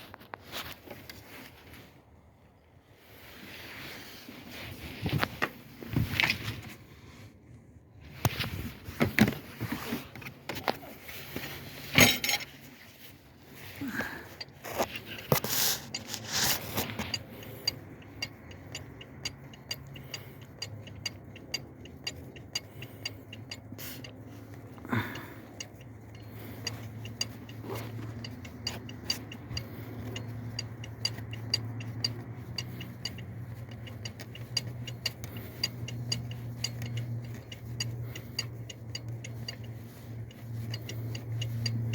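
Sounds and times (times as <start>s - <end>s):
low steady hum: 2.4s - 41.9s
metal clinking and scraping: 11.1s - 13.7s
quick evenly spaced ticks: 14.4s - 41.9s.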